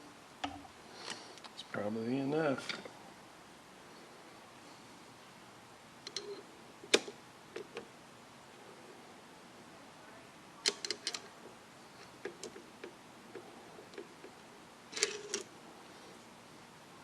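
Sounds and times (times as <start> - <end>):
tools and hardware clicking: 6.1 - 7.8, 10.6 - 11.3, 14.9 - 15.5.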